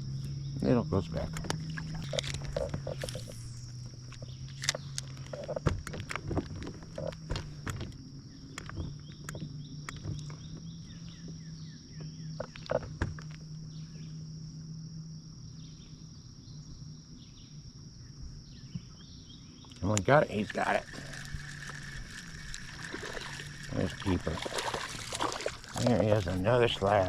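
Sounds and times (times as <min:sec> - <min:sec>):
high-pitched whine: 0:00.0 - 0:05.6, 0:19.8 - 0:27.0
steady low hum: 0:00.0 - 0:27.0
fishing gear clicking and knocking: 0:01.2 - 0:03.5, 0:19.8 - 0:27.0.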